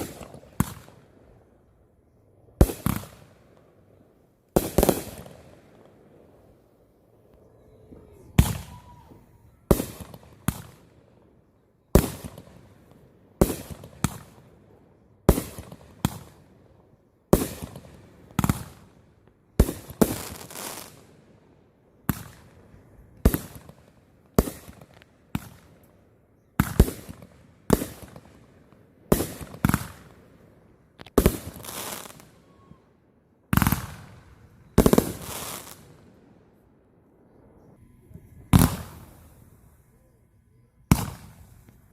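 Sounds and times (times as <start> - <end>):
fireworks banging: 2.6 - 3.7, 4.5 - 10.9, 33.5 - 36.0, 37.6 - 39.9, 40.8 - 41.9.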